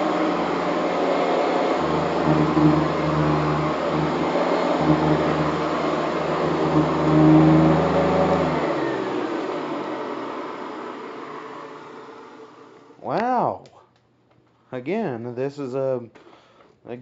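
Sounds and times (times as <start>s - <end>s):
vacuum cleaner motor hum: 0.0s - 13.0s.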